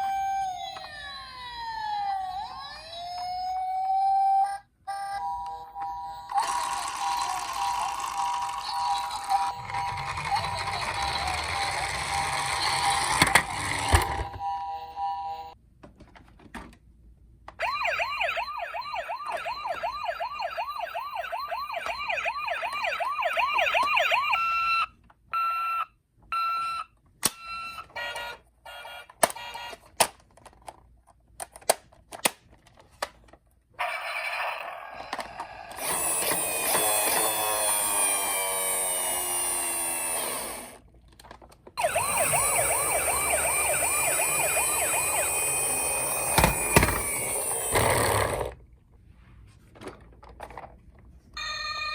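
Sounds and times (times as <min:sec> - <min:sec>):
toy siren wailing yelp: 0:00.0 - 0:15.4, 0:17.6 - 0:25.6, 0:41.8 - 0:47.9, 0:51.4 - 0:51.9
busy toy siren: 0:00.0 - 0:15.6, 0:17.6 - 0:26.8, 0:27.4 - 0:29.8, 0:33.8 - 0:40.8, 0:41.8 - 0:48.2, 0:51.4 - 0:51.9.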